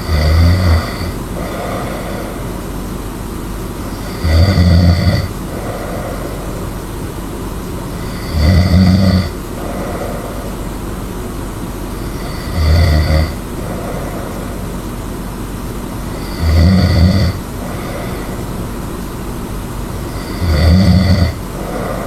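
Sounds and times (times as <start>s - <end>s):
person snoring loudly: 0.0s - 2.8s, 3.8s - 6.9s, 7.9s - 10.8s, 12.0s - 14.8s, 16.0s - 18.6s, 19.9s - 22.0s
steady background noise: 0.0s - 22.0s.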